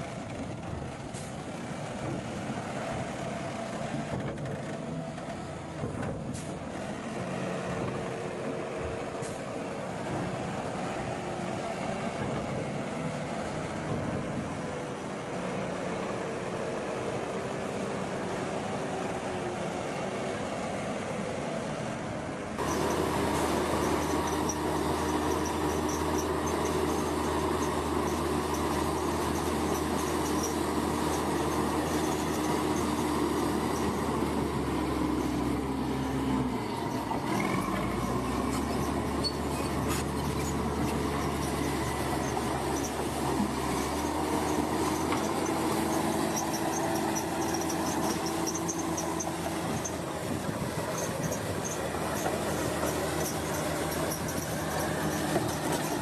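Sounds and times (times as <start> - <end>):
heavy diesel machinery running: 0.0 - 56.0
high metallic squeal: 22.6 - 50.1, 50.9 - 56.0.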